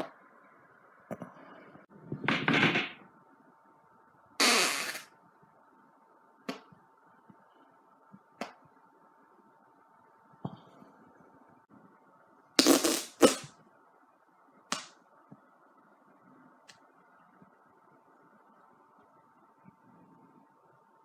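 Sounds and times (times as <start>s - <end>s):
loud farts: 4.4s - 5.1s, 12.6s - 13.5s.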